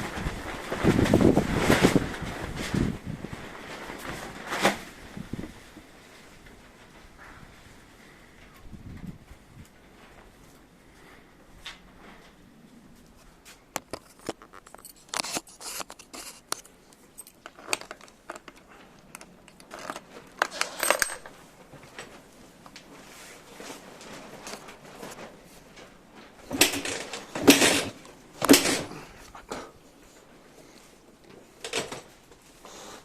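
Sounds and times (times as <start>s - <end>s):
scraping rustles: 0.0s - 33.0s
light clicks and clinks: 13.9s - 21.4s.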